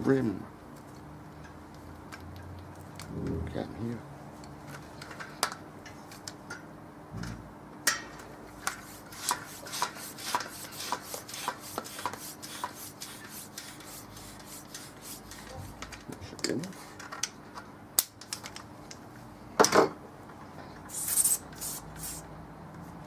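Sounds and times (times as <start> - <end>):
hand pump rasping strokes: 8.9 - 15.2.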